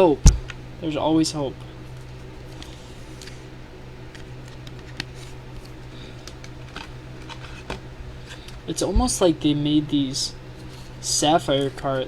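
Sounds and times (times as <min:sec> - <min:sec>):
steady low hum: 0:00.0 - 0:12.0
trading cards rustling and clicking: 0:01.9 - 0:03.4, 0:04.0 - 0:09.3.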